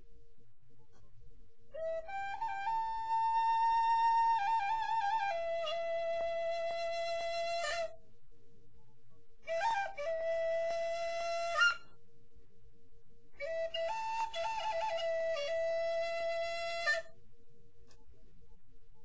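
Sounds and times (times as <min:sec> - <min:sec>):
solo flute: 0:01.7 - 0:08.1, 0:09.4 - 0:12.0, 0:13.3 - 0:17.2.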